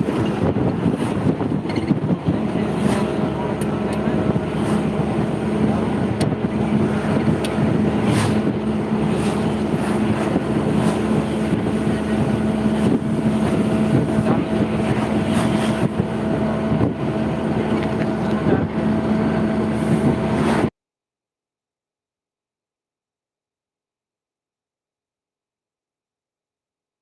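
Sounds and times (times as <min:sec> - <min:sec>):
wind noise: 0:00.0 - 0:20.7.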